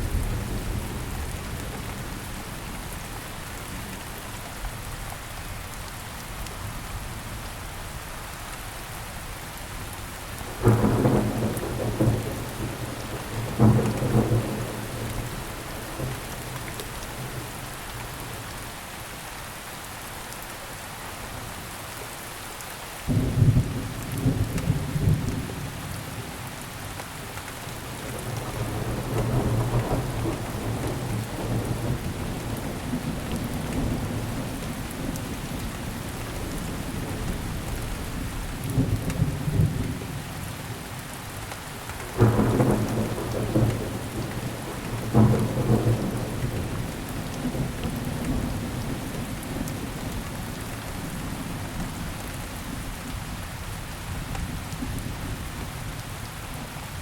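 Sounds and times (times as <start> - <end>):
steady rainfall: 0.0 - 57.0
thunder rumbling: 10.6 - 17.6, 28.0 - 40.2, 42.2 - 50.3.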